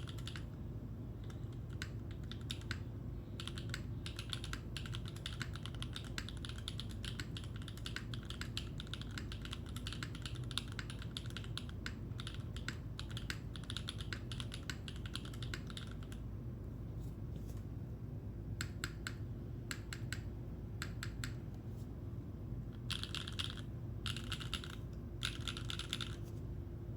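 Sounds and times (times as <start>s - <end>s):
mechanical keyboard typing: 0.0s - 0.5s, 1.2s - 2.8s, 3.4s - 16.2s, 22.8s - 26.2s
steady low hum: 0.0s - 26.9s.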